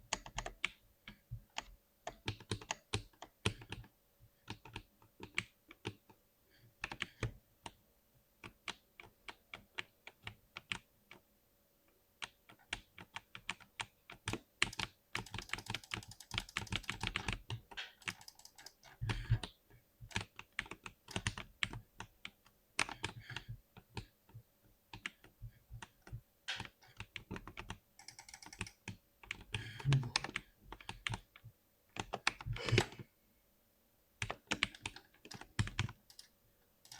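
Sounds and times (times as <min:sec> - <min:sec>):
mechanical keyboard typing: 0:00.1 - 0:00.7, 0:01.5 - 0:03.9, 0:12.2 - 0:19.5, 0:20.1 - 0:22.1, 0:26.5 - 0:31.3, 0:34.2 - 0:36.9.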